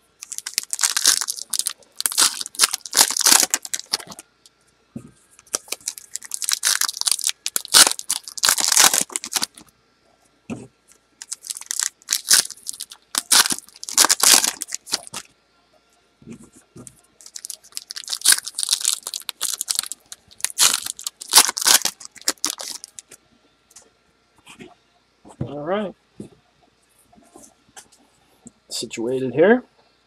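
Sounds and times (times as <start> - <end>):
card pack wrappers tearing and crinkling: 0.2 - 4.2, 5.4 - 9.6, 11.2 - 15.2, 17.2 - 23.1.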